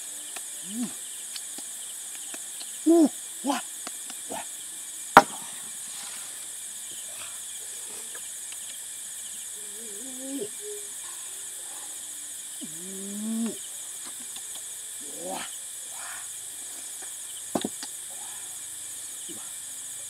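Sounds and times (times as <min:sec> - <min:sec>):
high-pitched insect drone: 0:00.0 - 0:20.0
low bird-like calls: 0:09.6 - 0:12.0.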